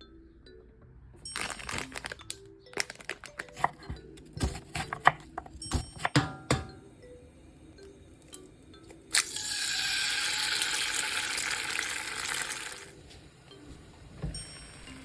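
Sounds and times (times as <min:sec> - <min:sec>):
plastic wrapper crinkling and tearing: 0:01.3 - 0:03.9
packet crackling and clicking: 0:01.3 - 0:06.1.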